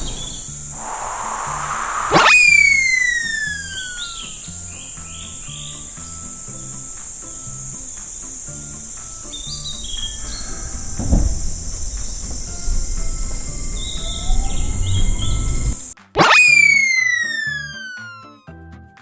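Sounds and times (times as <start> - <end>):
falling glide tone: 0.0 - 7.8, 8.4 - 18.5
short chirping effects: 0.0 - 11.0, 12.0 - 18.5
high-pitched insect buzzing: 0.1 - 18.4
light cartoon music: 2.1 - 19.0
low thud: 9.6 - 15.8.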